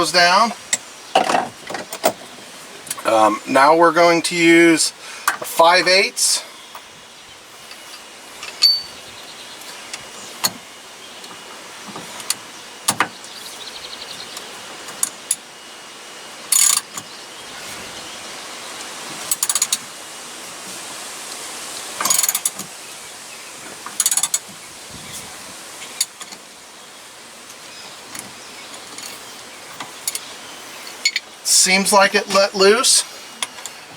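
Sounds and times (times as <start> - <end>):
metal tools clicking and knocking: 8.4 - 8.9.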